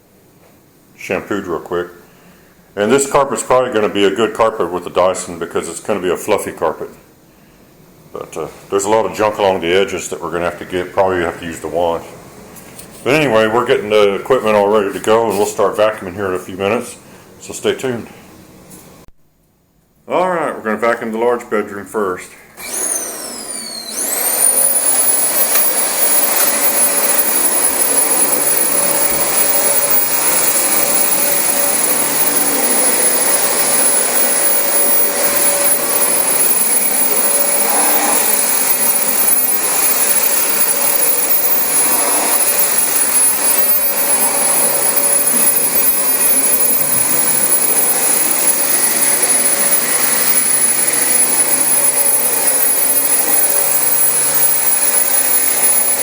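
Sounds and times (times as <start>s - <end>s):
vacuum cleaner motor whining: 22.6s - 56.0s.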